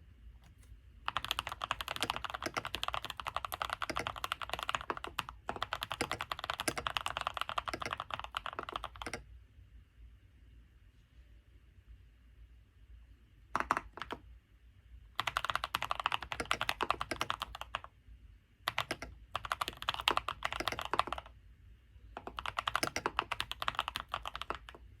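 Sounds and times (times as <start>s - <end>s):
mechanical keyboard typing: 0.5s - 9.2s, 13.6s - 14.2s, 15.2s - 17.9s, 18.7s - 21.3s, 22.2s - 24.8s.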